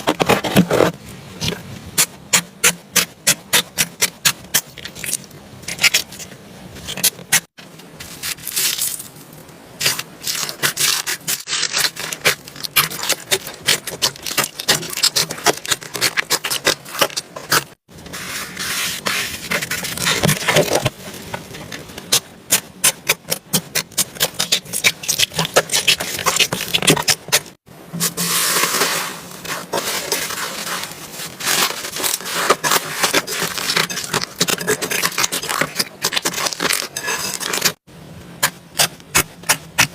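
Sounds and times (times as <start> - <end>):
slime scraping rub: 9.8 - 20.9, 22.0 - 37.8.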